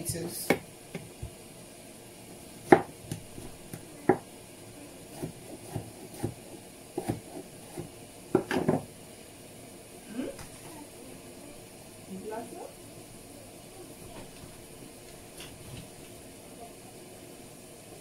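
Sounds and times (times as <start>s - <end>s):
knife cutting on chopping board: 5.1s - 6.4s.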